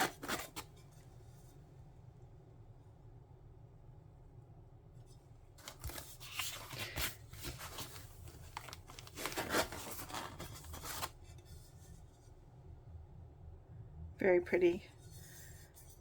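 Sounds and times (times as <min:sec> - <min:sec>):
packaging rustling and crinkling: 0:00.0 - 0:00.7, 0:05.6 - 0:11.2.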